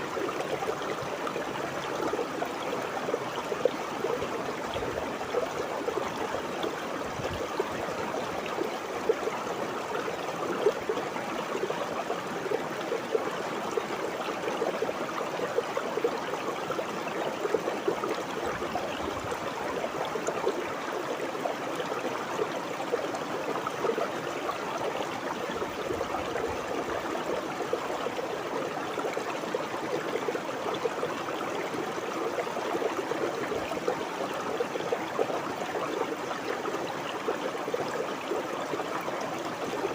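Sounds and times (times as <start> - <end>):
river water flowing over rocks: 0.0 - 39.9.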